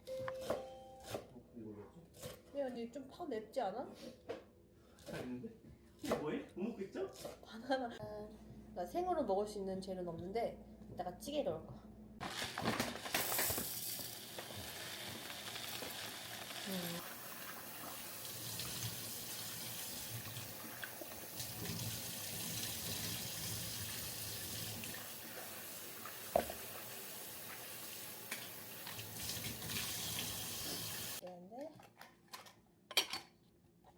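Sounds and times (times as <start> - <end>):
tap running into a sink: 26.1 - 26.8.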